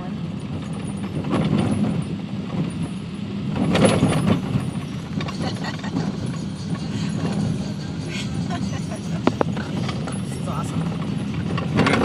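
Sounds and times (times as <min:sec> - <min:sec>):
vehicle road rumble: 0:00.0 - 0:12.0
loose things rattling and knocking: 0:03.6 - 0:12.0.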